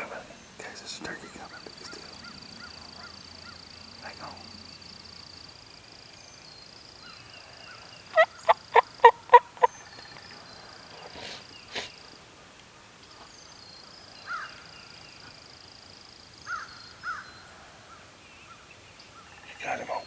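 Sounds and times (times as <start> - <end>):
wild turkey calling: 0.0 - 4.6, 7.0 - 11.9.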